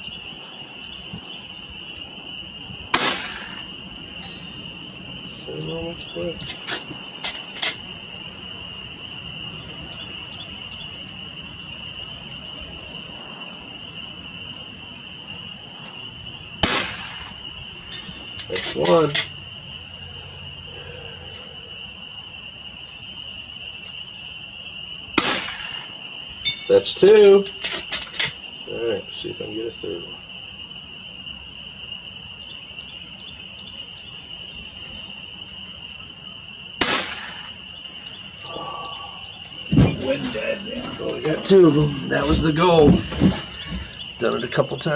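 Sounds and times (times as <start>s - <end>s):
wind noise on microphone: 0.0s - 18.5s, 39.6s - 44.2s
high insect drone: 0.0s - 44.9s
air rifle shot: 2.9s - 3.7s, 16.6s - 17.4s, 25.2s - 26.0s, 36.8s - 37.6s.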